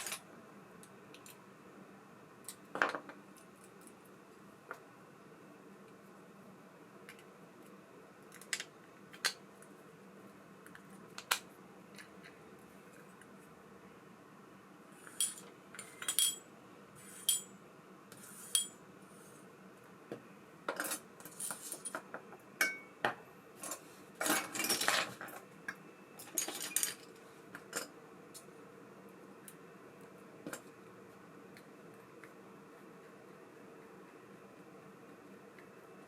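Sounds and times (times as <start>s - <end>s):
small metal parts clinking: 26.2s - 27.1s.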